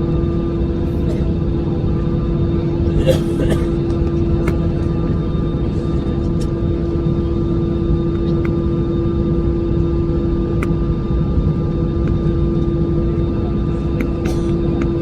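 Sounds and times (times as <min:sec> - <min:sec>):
airplane engines rumbling: 0:00.0 - 0:15.0.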